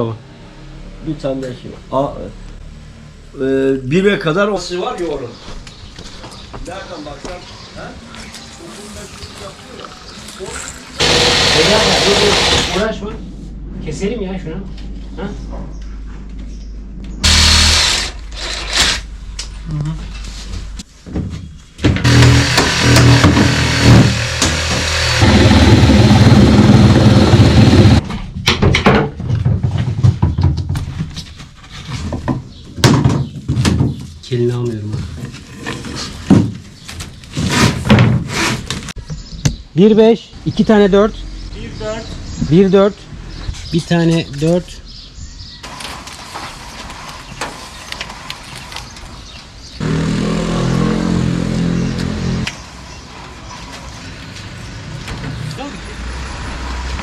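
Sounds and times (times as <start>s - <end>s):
loud steady motor drone: 11.0s - 15.1s, 15.9s - 19.5s, 22.0s - 28.0s, 49.8s - 52.6s
low rumble: 12.4s - 20.8s
knocks and clatter: 21.0s - 34.1s.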